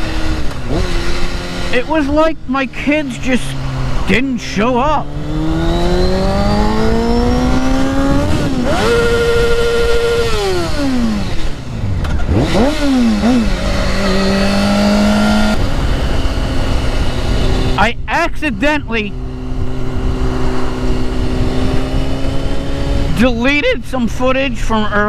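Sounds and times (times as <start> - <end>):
motorcycle engine revving: 0.0 - 17.9, 18.6 - 24.2
wind rushing: 3.2 - 10.2, 19.1 - 23.2.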